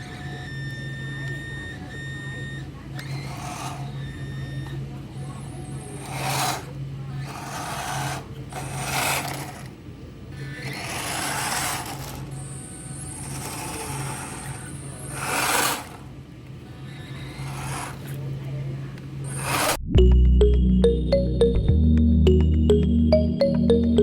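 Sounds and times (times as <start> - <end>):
small electric motors whirring: 0.0 - 18.2, 19.2 - 19.8.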